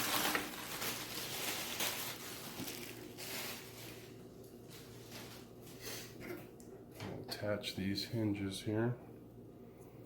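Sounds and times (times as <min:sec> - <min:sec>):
packaging rustling and crinkling: 0:00.0 - 0:05.8.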